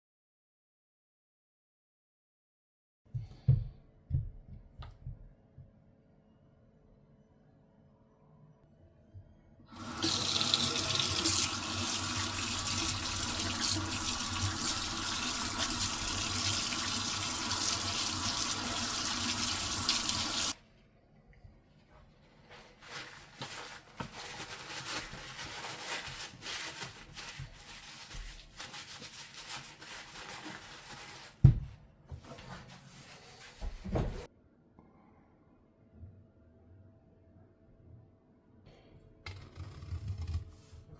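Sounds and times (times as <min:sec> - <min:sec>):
water running from tap: 0:09.7 - 0:20.6
rubbing and handling sounds: 0:21.8 - 0:34.3.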